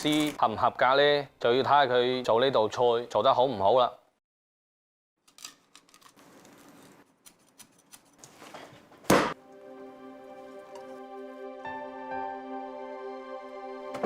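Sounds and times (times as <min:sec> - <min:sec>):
cleaver striking chopping board: 0:09.1 - 0:09.4
soft background music: 0:09.4 - 0:14.0.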